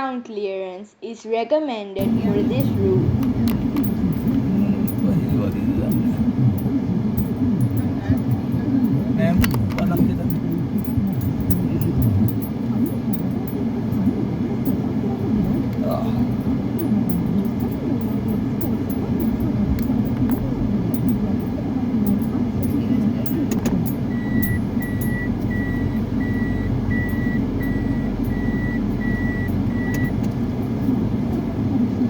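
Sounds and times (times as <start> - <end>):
vehicle engine and road rumble: 2.0 - 32.0
warning beeper short high beeps: 15.9 - 30.2.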